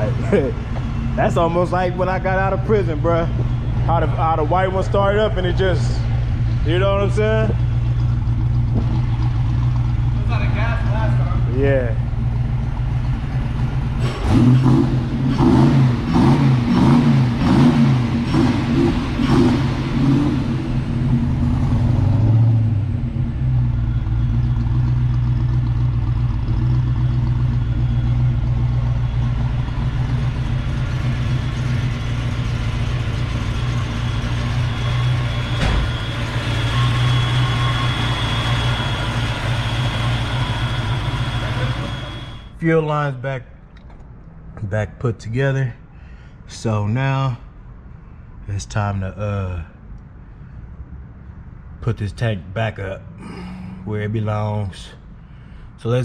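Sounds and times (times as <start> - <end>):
car engine idling: 0.0 - 44.6.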